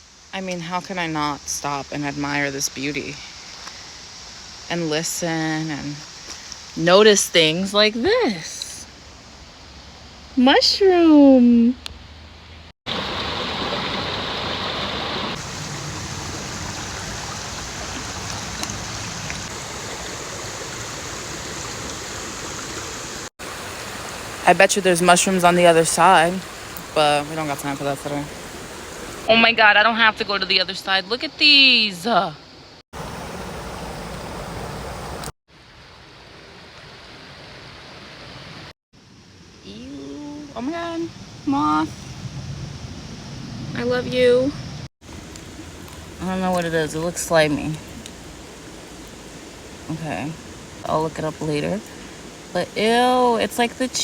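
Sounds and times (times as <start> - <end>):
stream flowing water: 12.9 - 29.4, 32.5 - 39.5, 45.0 - 54.0.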